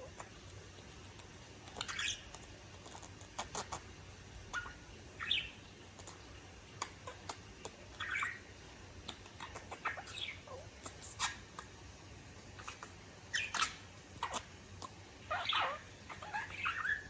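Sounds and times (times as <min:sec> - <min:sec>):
budgerigar chattering: 0:08.0 - 0:08.4, 0:09.1 - 0:11.4, 0:15.3 - 0:17.0.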